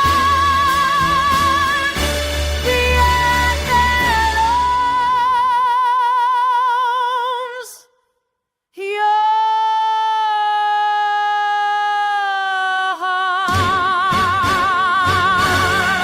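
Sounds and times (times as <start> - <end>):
woman singing long notes: 0.0 - 7.8.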